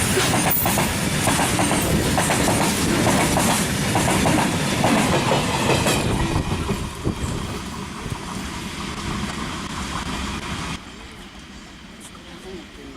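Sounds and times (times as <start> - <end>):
wheels knocking on rails: 0.0 - 6.9
freight train rumbling: 0.0 - 12.9.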